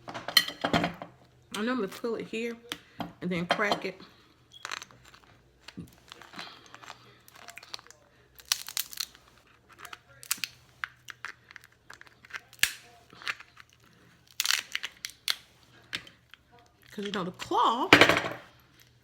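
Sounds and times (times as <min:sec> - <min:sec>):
crab shell cracking: 0:04.6 - 0:17.2.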